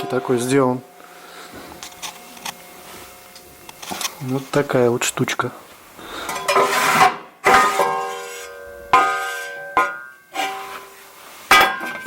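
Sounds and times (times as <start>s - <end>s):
sheet metal clanks ringing: 0.0s - 0.9s, 6.2s - 10.7s.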